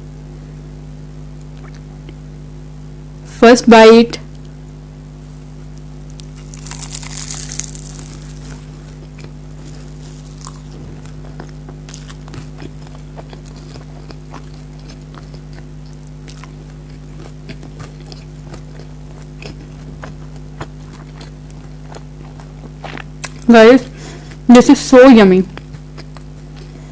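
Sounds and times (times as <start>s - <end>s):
steady low hum: 0.0s - 26.9s
chewing with crunches: 1.4s - 2.2s, 5.6s - 24.5s, 25.5s - 26.9s
crunchy bite into fried food: 5.7s - 23.4s.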